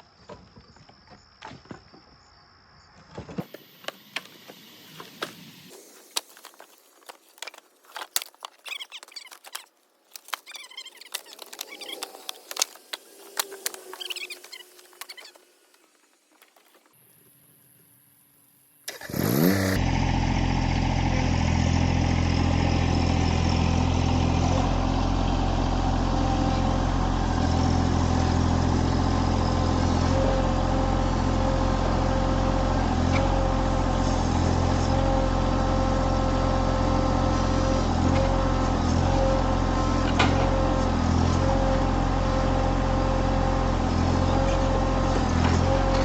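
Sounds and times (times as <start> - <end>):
chainsaw revving and running: 18.9 - 46.0.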